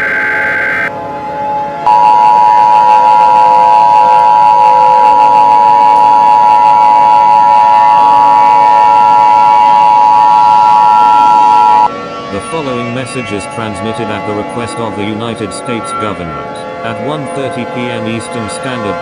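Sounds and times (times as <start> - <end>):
two-tone alert alarm: 0.0 - 0.9, 1.9 - 11.9.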